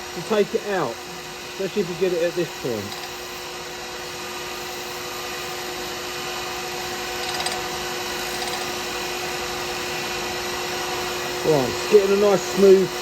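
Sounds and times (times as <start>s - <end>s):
turning tool cutting: 7.1s - 8.8s.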